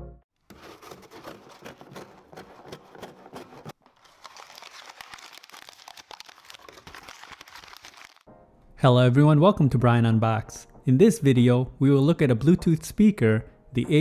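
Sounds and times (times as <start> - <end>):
packaging crinkling and rustling: 0.4 - 8.3.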